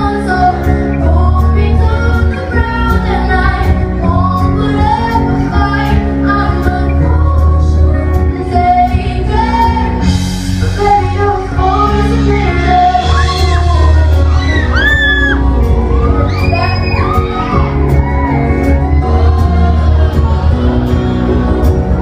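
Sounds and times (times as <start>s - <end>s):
woman singing a pop song: 0.0s - 15.7s
heavy bass: 0.0s - 22.0s.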